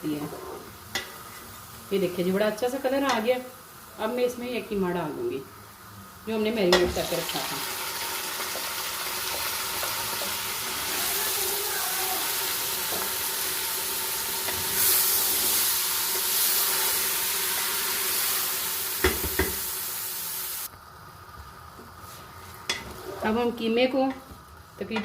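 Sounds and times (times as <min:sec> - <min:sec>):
meat sizzling in hot oil: 0:06.2 - 0:23.2
spoon knocking against pot: 0:19.0 - 0:19.6.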